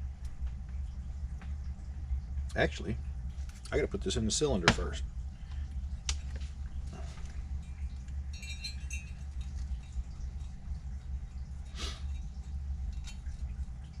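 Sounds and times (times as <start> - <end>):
steady low hum: 0.0 - 14.0
metallic clicks and clinks: 7.6 - 10.7.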